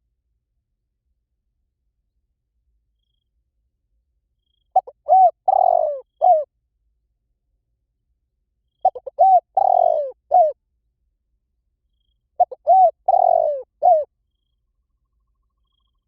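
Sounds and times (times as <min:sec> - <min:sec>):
dove cooing: 0:04.8 - 0:06.5, 0:08.8 - 0:10.6, 0:12.4 - 0:14.1.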